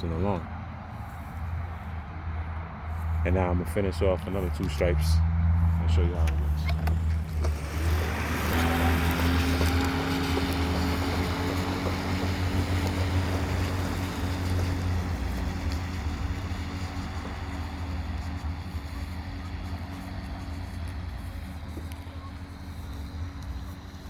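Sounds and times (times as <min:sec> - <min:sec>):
electric lawn mower humming: 0:05.6 - 0:24.0.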